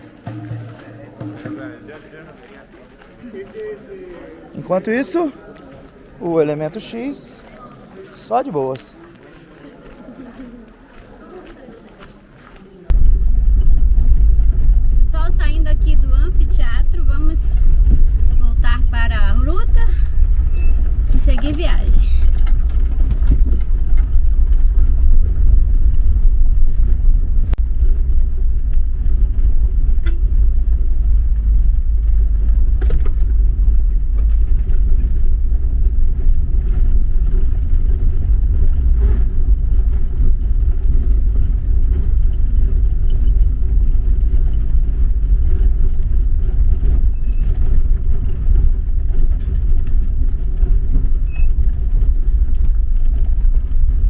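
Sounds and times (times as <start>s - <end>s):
road noise: 0.0s - 54.0s
van engine rumble: 12.9s - 54.0s.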